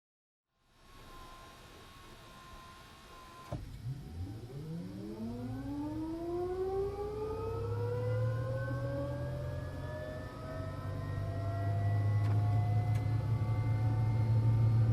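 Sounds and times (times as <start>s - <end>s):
low rumble: 7.7s - 14.9s.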